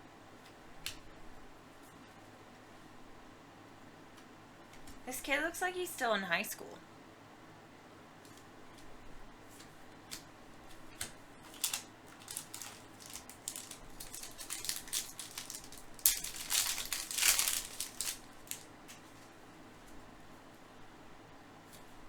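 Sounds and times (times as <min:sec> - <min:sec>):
card packs crinkling and rustling: 0:09.5 - 0:20.0.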